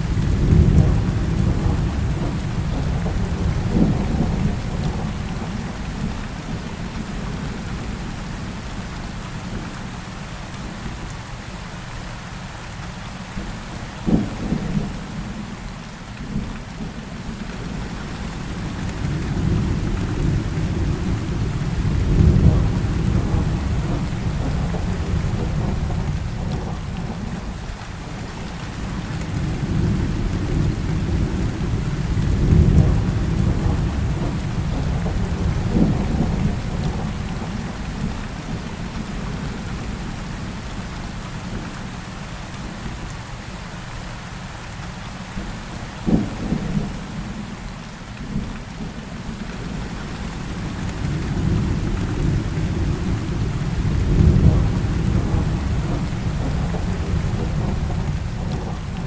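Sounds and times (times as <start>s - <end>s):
thunder rumbling: 0.0s - 6.0s, 17.6s - 40.1s, 48.3s - 59.0s
heavy rain falling: 0.0s - 59.0s.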